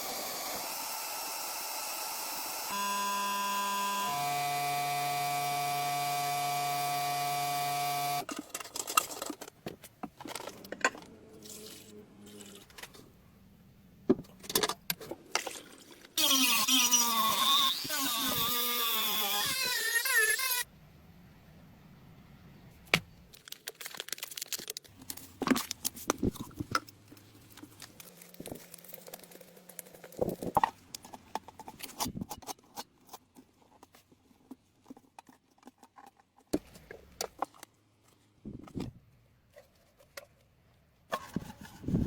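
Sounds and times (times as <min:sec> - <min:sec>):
objects clicking and knocking: 0:08.2 - 0:13.1, 0:24.6 - 0:39.0
objects scraping: 0:08.3 - 0:13.2, 0:41.1 - 0:42.0.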